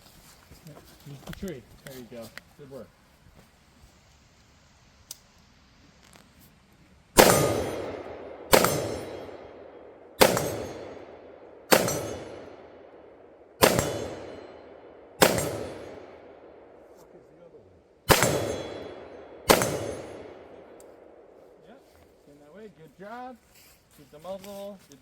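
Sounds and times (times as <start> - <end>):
echoing gunshots: 7.2 - 16.9, 18.0 - 21.6.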